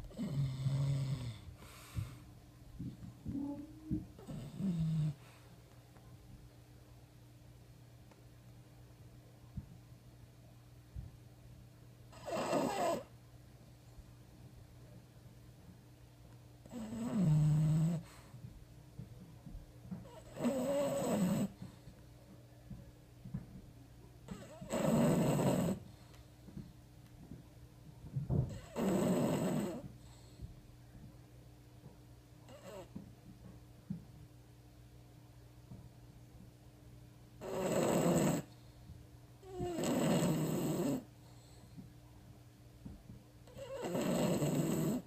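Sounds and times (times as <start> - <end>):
dog snoring: 0.0 - 2.2, 4.2 - 5.4, 12.1 - 13.1, 16.6 - 18.3, 20.0 - 21.8, 24.3 - 26.1, 28.4 - 30.4, 32.5 - 33.0, 37.4 - 38.6, 39.4 - 41.6, 43.5 - 45.0.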